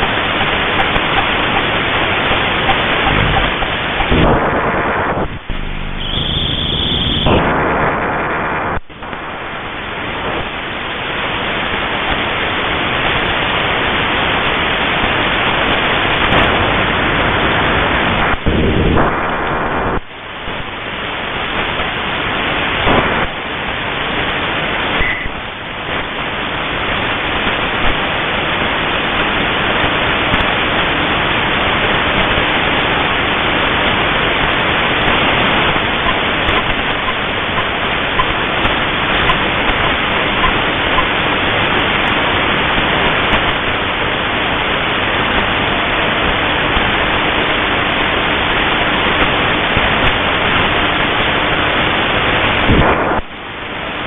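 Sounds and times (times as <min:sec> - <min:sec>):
radio static hiss: 0:00.0 - 0:54.0.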